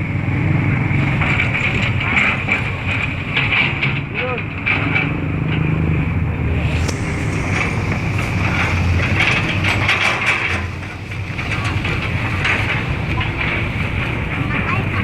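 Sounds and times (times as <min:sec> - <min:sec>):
heavy machinery engine running: 0:00.0 - 0:15.0
metal clanks and scraping: 0:01.1 - 0:05.8, 0:06.6 - 0:14.8.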